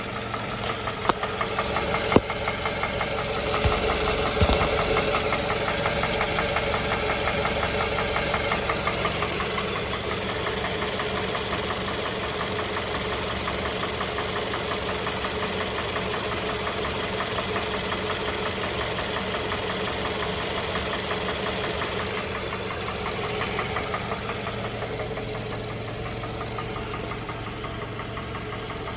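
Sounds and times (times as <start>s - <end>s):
car engine running: 0.0s - 28.9s
fast even engine knock: 0.0s - 28.9s
sharp thumps: 1.0s - 5.3s.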